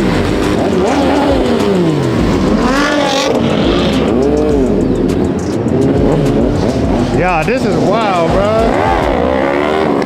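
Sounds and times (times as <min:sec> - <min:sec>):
car engines revving: 0:00.0 - 0:10.0.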